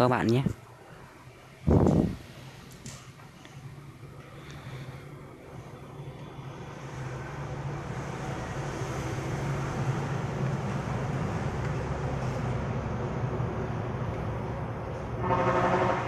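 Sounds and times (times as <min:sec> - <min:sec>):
air rushing from fan: 0:00.7 - 0:15.3.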